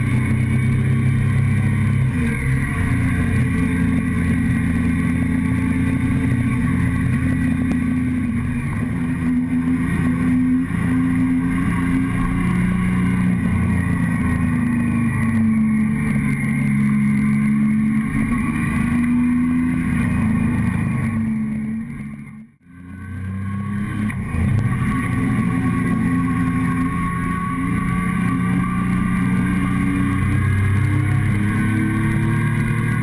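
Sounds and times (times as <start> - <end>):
motorcycle engine running: 0.0 - 33.0.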